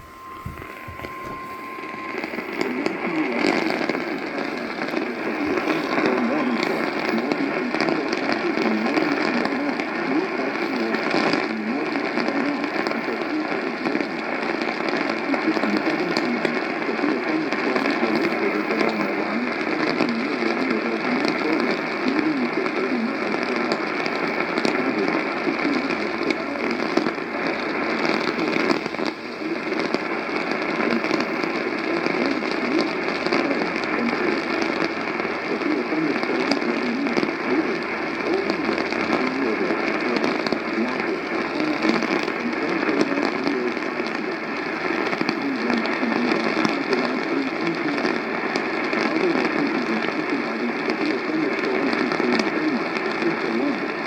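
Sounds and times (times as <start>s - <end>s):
radio static hiss with crackle: 0.0s - 54.0s.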